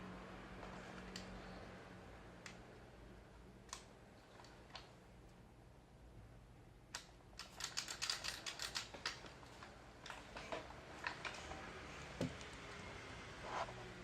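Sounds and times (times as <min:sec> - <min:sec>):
rifle mechanical clicks: 0:06.9 - 0:10.2.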